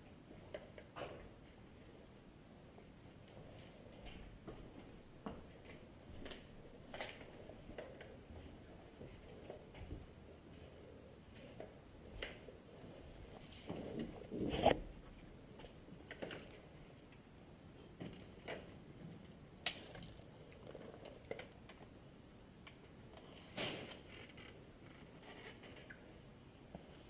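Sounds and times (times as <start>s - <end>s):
rustling and scraping: 3.2s - 17.1s, 23.1s - 27.0s.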